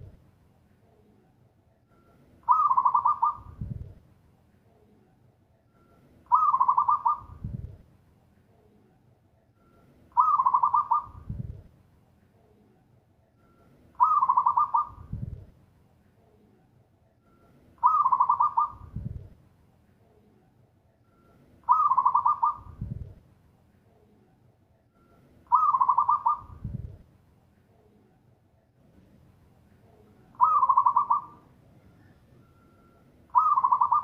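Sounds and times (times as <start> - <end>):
dove cooing: 2.4 - 3.7, 6.3 - 7.6, 10.1 - 11.4, 14.0 - 15.4, 17.8 - 19.2, 21.7 - 23.0, 25.5 - 26.9, 30.4 - 32.3, 33.3 - 34.0.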